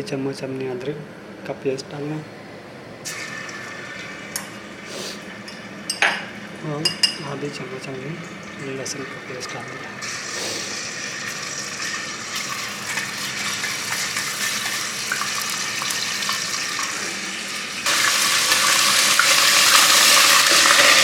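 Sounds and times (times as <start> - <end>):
paste sizzling in hot oil: 10.0 - 21.0.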